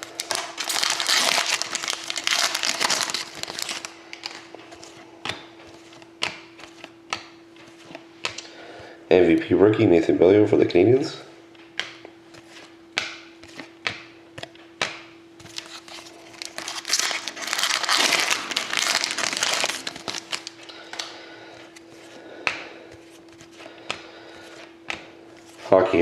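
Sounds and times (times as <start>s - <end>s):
foil wrapper tearing and crinkling: 0.0s - 4.4s, 15.5s - 21.1s
cards clicking and tapping: 2.6s - 8.5s, 11.6s - 21.1s, 22.4s - 25.1s.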